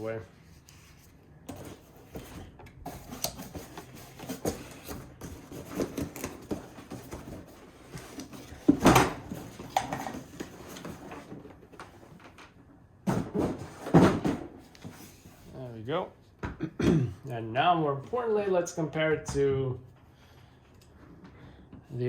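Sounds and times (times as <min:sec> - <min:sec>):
packaging box scraping and rustling: 0:00.5 - 0:11.7.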